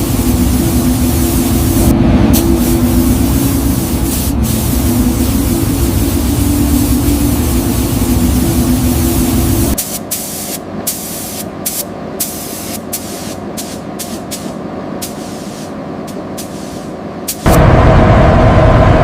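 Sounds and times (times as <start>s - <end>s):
compressed air spray hissing: 0.0s - 1.8s, 2.4s - 15.7s, 16.3s - 17.4s
humming machine: 0.0s - 9.8s, 16.0s - 19.0s
steady machine noise: 0.0s - 9.8s, 15.9s - 19.0s.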